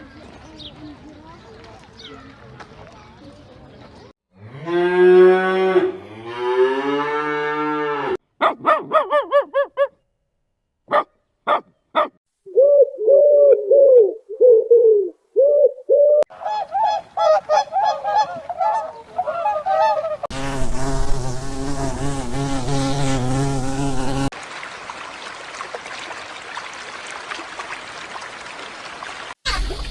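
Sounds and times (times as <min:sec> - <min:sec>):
low moo-like call: 0:04.4 - 0:08.2
quick honking calls: 0:10.9 - 0:12.1
short sharp animal calls: 0:10.9 - 0:12.2.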